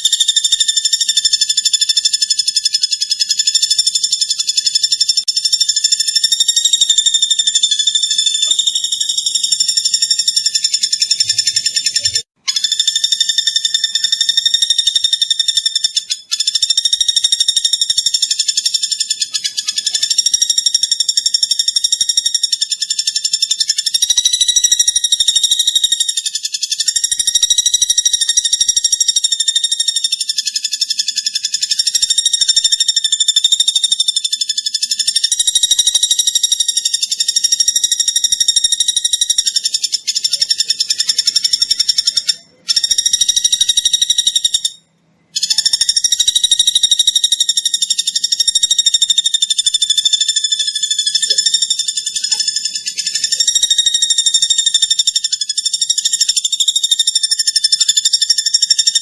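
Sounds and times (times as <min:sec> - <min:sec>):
woodpecker rattling trill: 0:00.0 - 0:59.0.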